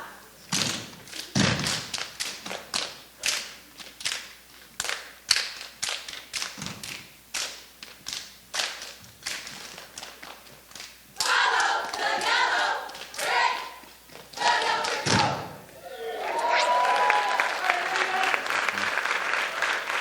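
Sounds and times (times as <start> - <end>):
rhythmic stomps claps and body slaps: 0.5 - 15.6.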